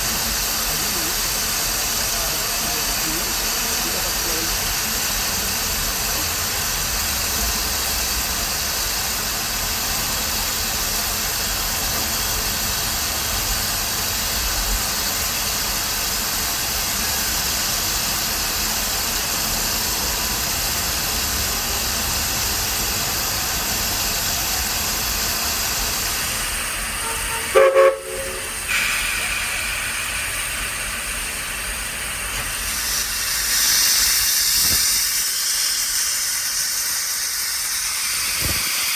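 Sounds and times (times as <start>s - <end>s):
steam hissing: 0.0s - 38.9s
loud pitched whistle blast: 27.0s - 28.6s.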